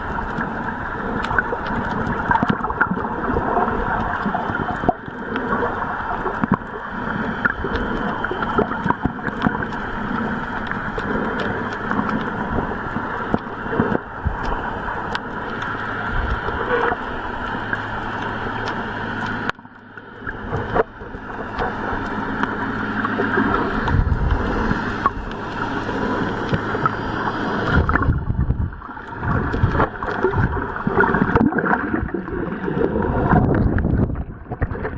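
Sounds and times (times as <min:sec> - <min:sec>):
churning gurgling water: 0:00.0 - 0:34.9
low engine hum: 0:03.2 - 0:31.4.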